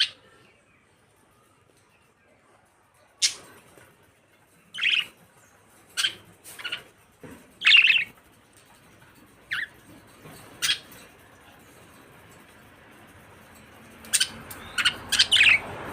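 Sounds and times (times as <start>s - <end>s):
budgerigars chirping: 4.7s - 5.2s, 5.9s - 6.9s, 7.6s - 8.2s, 10.6s - 10.9s, 14.0s - 15.7s.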